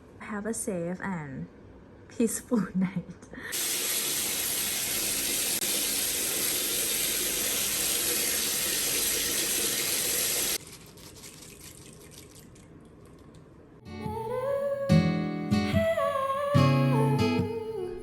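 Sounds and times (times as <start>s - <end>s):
running water: 3.5s - 12.7s.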